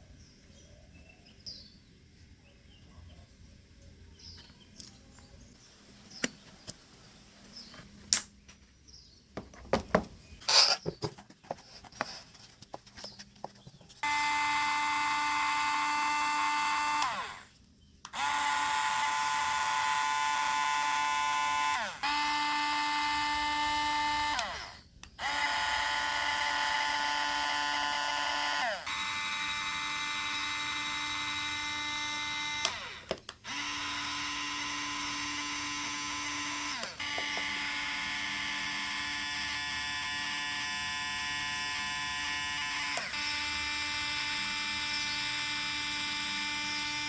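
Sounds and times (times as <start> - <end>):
small electric motor whining: 14.0 - 47.0.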